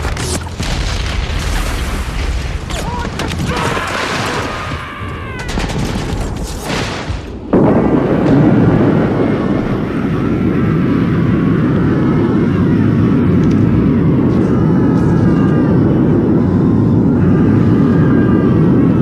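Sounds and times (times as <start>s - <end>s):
booms: 0.0s - 19.0s
dense rumbling noise: 7.0s - 19.0s.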